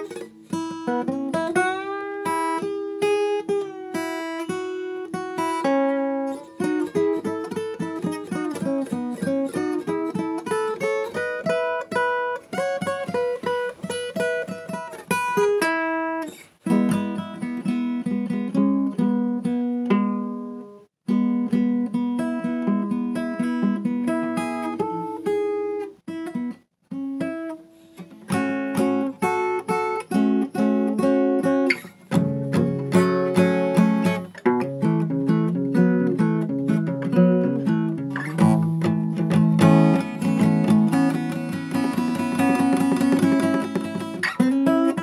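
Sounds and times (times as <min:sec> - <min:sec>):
acoustic guitar picking and strumming: 0:00.0 - 0:45.0.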